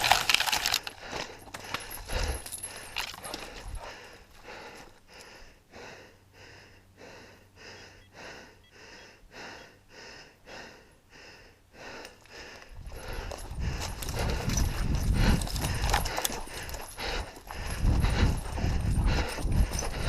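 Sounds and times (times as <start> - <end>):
person breathing hard: 0.0 - 20.0
rough rumble of movement: 12.8 - 20.0.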